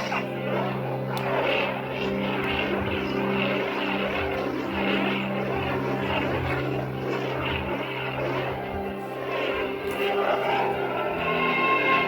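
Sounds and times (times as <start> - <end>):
droning music from small speaker: 0.0 - 12.0.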